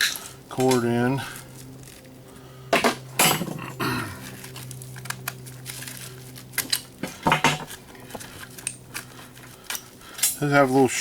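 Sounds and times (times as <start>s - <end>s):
metal clinks and knocks: 2.8s - 3.8s, 4.5s - 10.4s.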